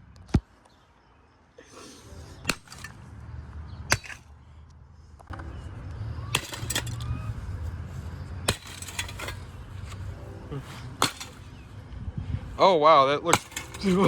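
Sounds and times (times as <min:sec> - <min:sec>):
metallic knocks and clinks: 0:06.2 - 0:07.4, 0:08.5 - 0:10.2, 0:11.0 - 0:11.7, 0:13.4 - 0:14.0.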